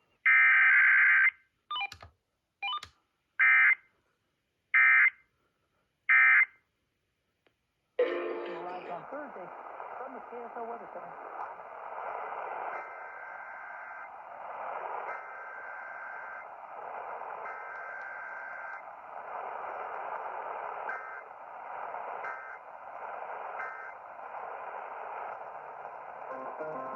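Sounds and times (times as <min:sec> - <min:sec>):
radio signal hiss: 0:08.0 - 0:26.9
digital data bursts: 0:12.6 - 0:18.8, 0:19.6 - 0:26.9.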